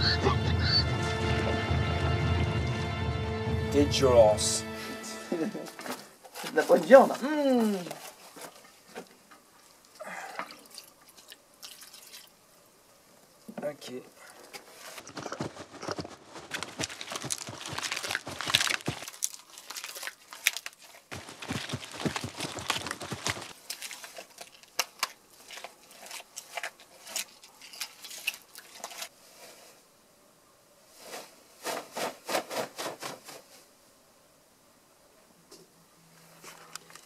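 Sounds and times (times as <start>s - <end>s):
raw meat squeezed and torn: 16.8s - 23.9s.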